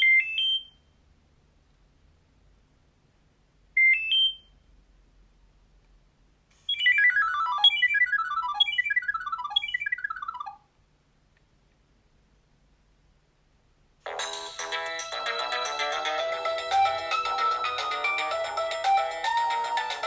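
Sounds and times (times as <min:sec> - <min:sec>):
descending note runs ringtone: 0:06.7 - 0:10.6
rising chirp alert tone: 0:06.7 - 0:10.6.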